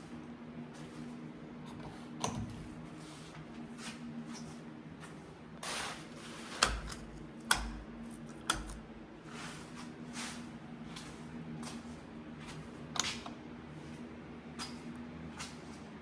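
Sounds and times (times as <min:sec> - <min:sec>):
steady low hum: 0:00.0 - 0:16.0
scuffing noise: 0:02.9 - 0:06.6, 0:09.2 - 0:13.2.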